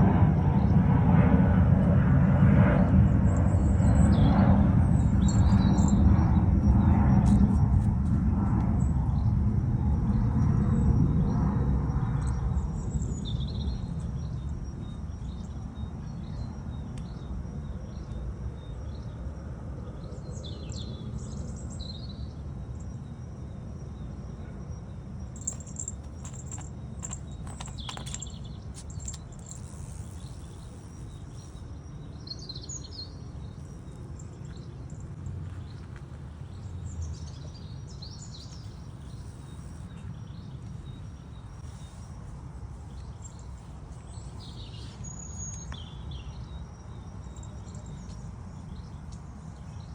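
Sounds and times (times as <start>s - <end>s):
small birds chirping: 3.0s - 7.8s, 25.4s - 49.9s.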